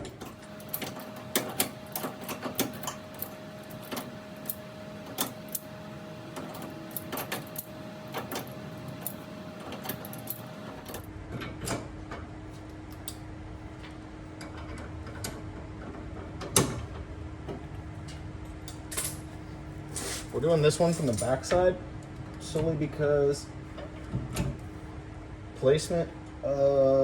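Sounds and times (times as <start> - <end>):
faint steady hum: 0.0 - 11.1
metal tools clicking and clanking: 0.0 - 11.1, 20.8 - 21.6.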